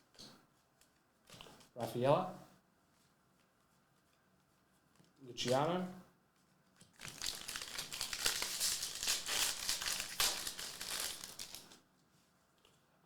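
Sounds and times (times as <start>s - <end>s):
foil wrapper crinkling: 7.0s - 11.8s.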